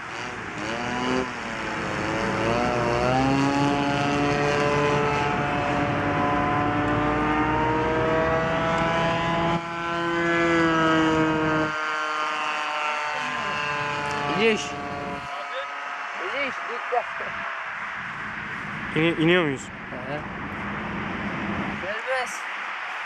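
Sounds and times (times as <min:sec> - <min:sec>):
model plane engine buzzing: 0:00.0 - 0:07.5, 0:08.4 - 0:16.5.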